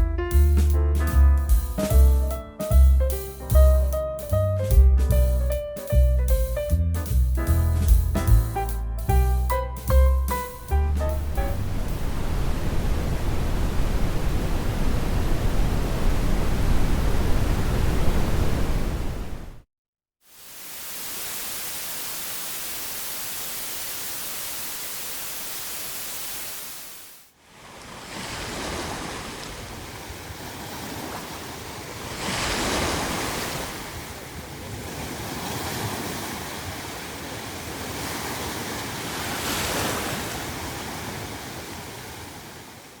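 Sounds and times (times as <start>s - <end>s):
ocean waves breaking: 10.6s - 19.6s, 25.6s - 43.0s
steady masking noise hiss: 20.3s - 27.2s.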